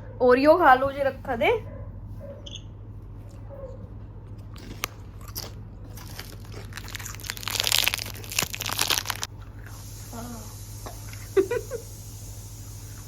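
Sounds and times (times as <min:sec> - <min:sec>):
crunching crisp snack: 0:04.2 - 0:09.7.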